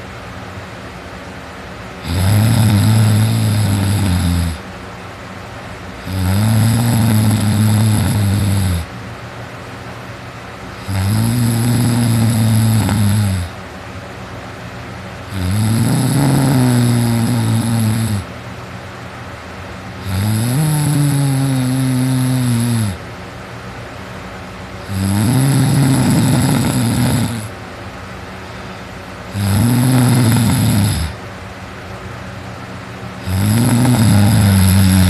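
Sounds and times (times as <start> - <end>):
heavy snoring: 2.0 - 4.6, 6.0 - 8.9, 10.8 - 13.6, 15.3 - 18.3, 20.0 - 23.0, 24.8 - 27.5, 28.5 - 31.2, 33.2 - 35.0
breathing: 28.3 - 29.2.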